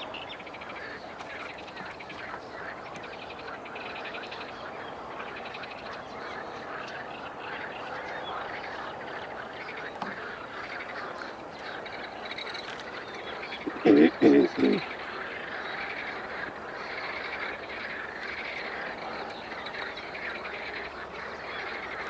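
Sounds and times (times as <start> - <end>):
frogs calling with pulsed trills: 0.1 - 22.0.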